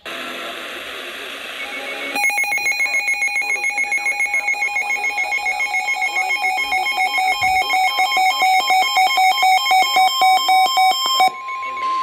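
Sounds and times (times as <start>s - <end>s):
two-tone electronic alarm beeping: 1.5s - 12.0s.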